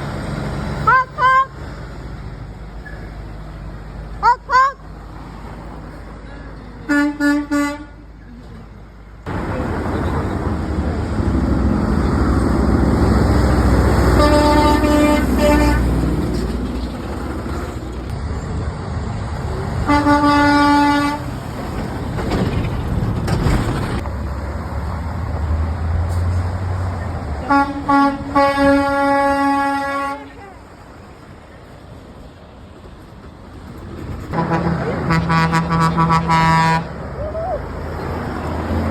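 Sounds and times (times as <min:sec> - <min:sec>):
trucks passing on a road: 0:00.0 - 0:38.9
truck horns: 0:00.1 - 0:01.8, 0:04.2 - 0:04.9, 0:06.8 - 0:08.3, 0:11.6 - 0:16.7, 0:19.6 - 0:21.6, 0:27.4 - 0:30.7, 0:34.3 - 0:37.6.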